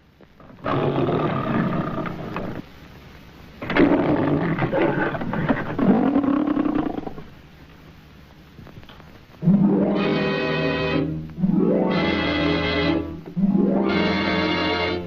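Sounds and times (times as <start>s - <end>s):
lion roaring: 0.4s - 2.6s, 3.6s - 7.3s.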